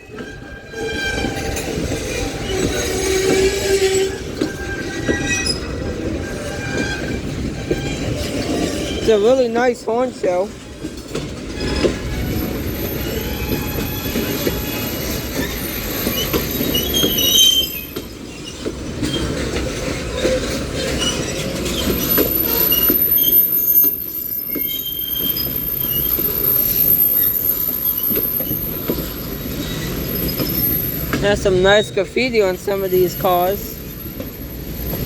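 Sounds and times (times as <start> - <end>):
high-pitched wheel squeals: 0.0 - 9.1, 11.6 - 19.3, 20.9 - 31.2
train wheels clacking on rails: 0.0 - 35.0.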